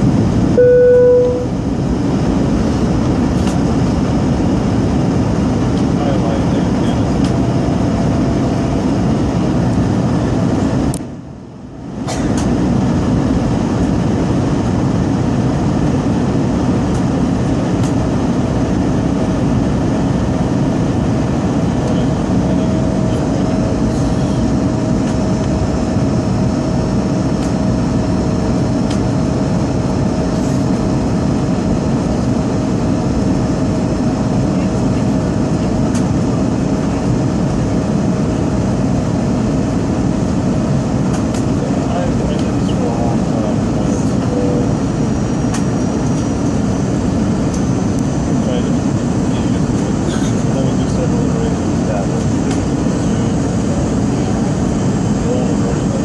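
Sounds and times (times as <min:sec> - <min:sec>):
airliner engine rumble: 0:00.0 - 0:56.0
faint steady hum: 0:00.5 - 0:01.6.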